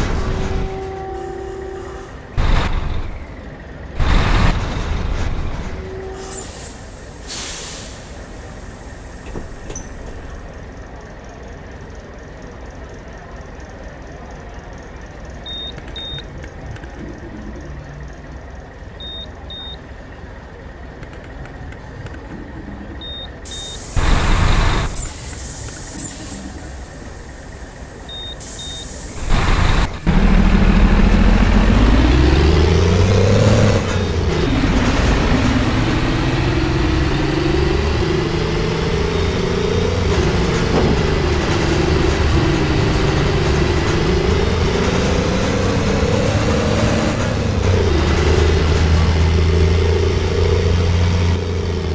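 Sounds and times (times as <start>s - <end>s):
bus engine: 0.0s - 51.9s
loud air hisses: 6.3s - 9.2s.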